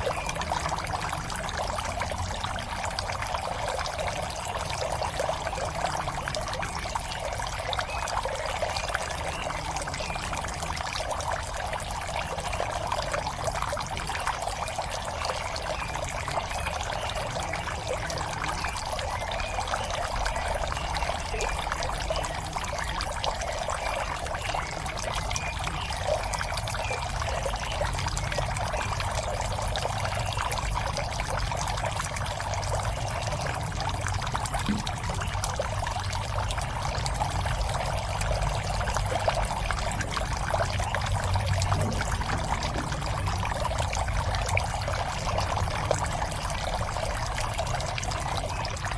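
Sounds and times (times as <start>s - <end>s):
water pouring into pond: 0.0s - 48.9s.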